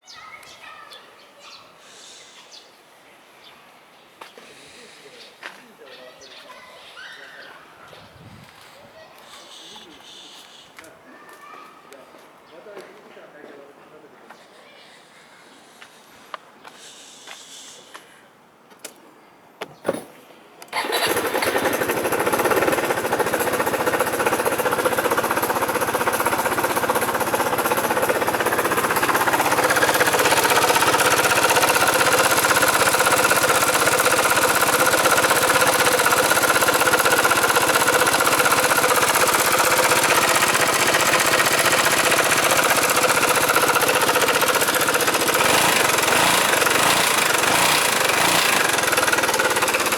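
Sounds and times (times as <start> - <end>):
scooter engine clattering: 20.7 - 49.9.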